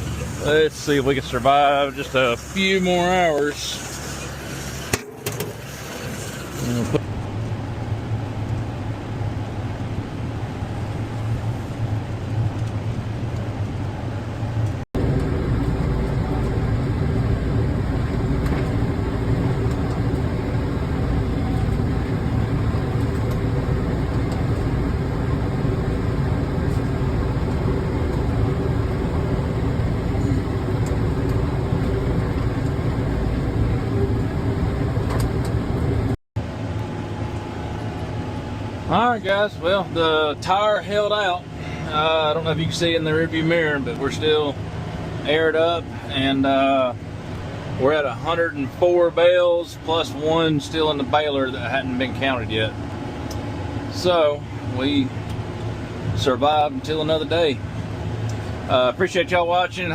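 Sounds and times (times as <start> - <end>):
hay baler working: 0.0 - 7.0, 15.0 - 36.1
tractor engine running: 15.0 - 36.2.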